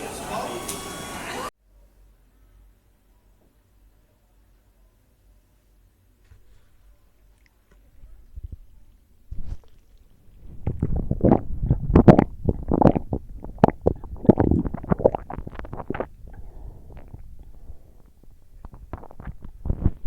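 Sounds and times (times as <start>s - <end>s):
wet mouth sounds: 8.4s - 20.0s
chewing crispy fried food: 8.6s - 20.0s.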